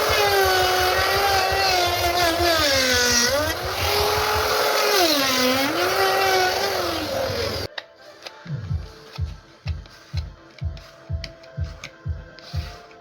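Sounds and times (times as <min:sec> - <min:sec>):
power tool motor whine: 0:00.0 - 0:07.7
music with thumping bass beat: 0:00.0 - 0:13.0.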